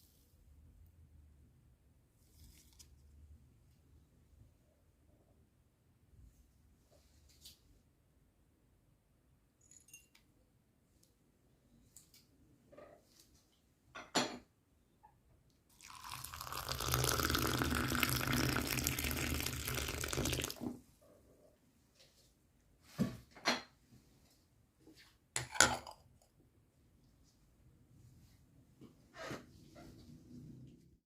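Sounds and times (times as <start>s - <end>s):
kitchenware clicks and knocks: 14.0s - 14.5s, 25.4s - 26.1s
water pouring: 15.7s - 20.7s.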